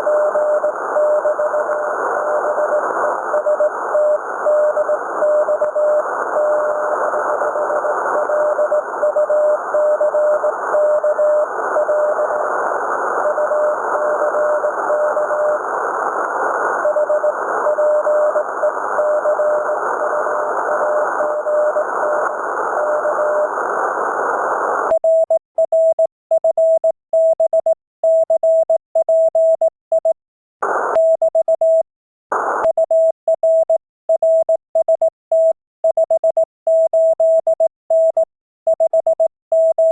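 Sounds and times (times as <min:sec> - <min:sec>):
morse code tone: 0:00.0 - 0:12.4
noise crackles: 0:00.0 - 0:24.9, 0:30.6 - 0:31.0, 0:32.3 - 0:32.7
radio band hiss: 0:19.6 - 0:24.9.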